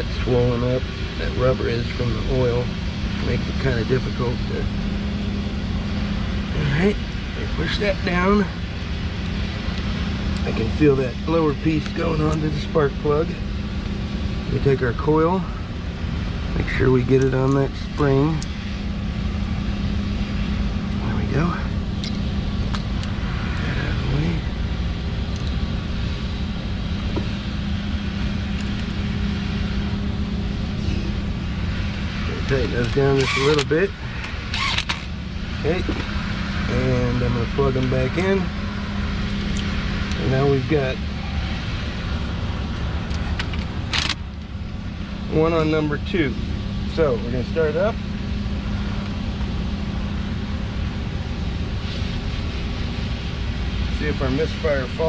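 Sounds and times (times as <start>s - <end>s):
machinery rumble and hum: 0.0s - 55.0s
forklift engine idling with misfire: 32.0s - 36.2s.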